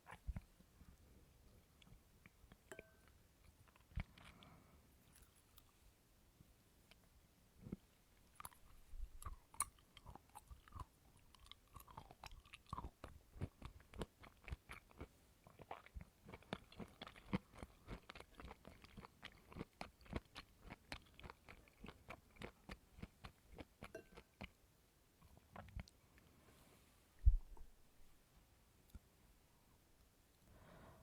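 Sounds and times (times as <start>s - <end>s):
crunchy chewing: 8.3s - 24.5s.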